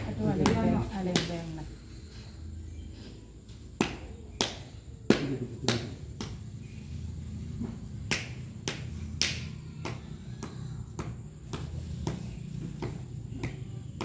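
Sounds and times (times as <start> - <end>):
sharp snaps: 3.7 - 6.6, 8.0 - 12.2.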